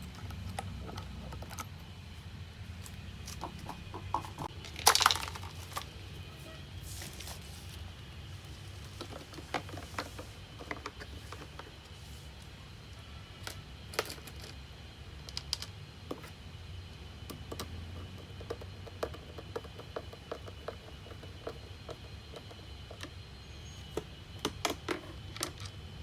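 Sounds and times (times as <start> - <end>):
plastic parts and tools clicking: 0.0 - 1.8, 2.8 - 5.9
steady low hum: 0.0 - 26.0.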